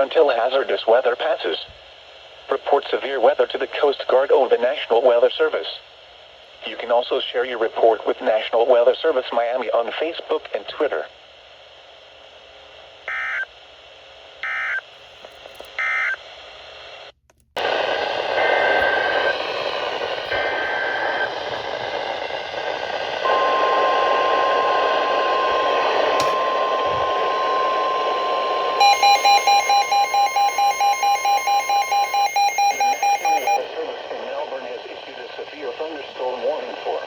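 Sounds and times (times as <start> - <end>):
electronic alarm beeping rapidly: 13.1 - 13.4, 27.1 - 33.6
radio static: 13.1 - 13.5, 17.6 - 37.0
steady warning tone: 13.1 - 13.5, 17.6 - 37.0
screeching data bursts: 23.2 - 33.6
warbling data bursts: 23.3 - 33.6.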